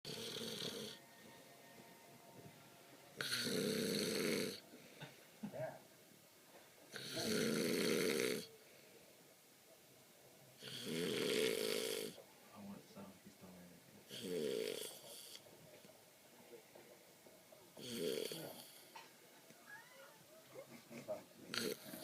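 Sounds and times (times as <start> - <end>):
man snoring: 0.1 - 1.0, 3.2 - 4.6, 7.0 - 8.5, 10.6 - 12.2, 14.1 - 15.4, 17.8 - 18.8, 21.5 - 22.0
quiet breathing: 2.4 - 5.4, 6.4 - 17.1, 17.7 - 19.1.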